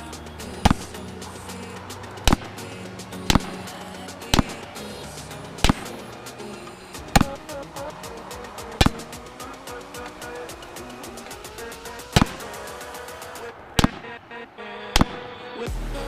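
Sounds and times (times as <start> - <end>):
background music: 0.0 - 16.0
gunshots: 2.0 - 14.2, 15.0 - 15.4.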